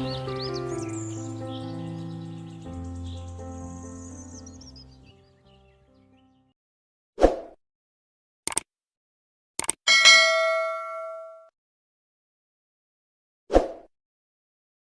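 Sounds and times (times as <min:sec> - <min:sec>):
quick double clicks: 0:08.5 - 0:08.7, 0:09.6 - 0:09.8
bell ding: 0:09.9 - 0:11.5.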